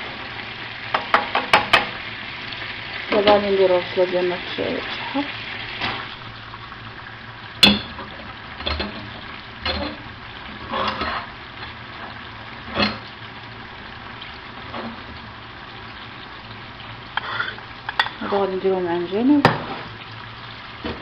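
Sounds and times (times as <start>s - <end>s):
onion sizzling in a frying pan: 0.0s - 21.0s
utensil knocking against pan: 0.9s - 1.9s.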